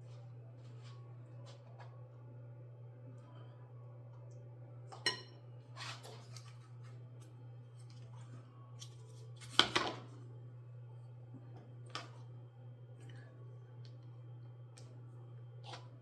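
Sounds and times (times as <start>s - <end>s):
steady low hum: 0.0s - 16.0s
scraping on countertop: 5.8s - 6.6s.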